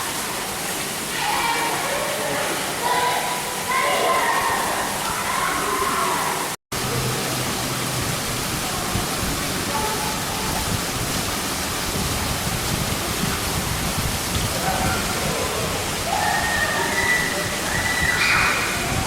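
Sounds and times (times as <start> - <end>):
waterfall splashing into pond: 0.0 - 19.0.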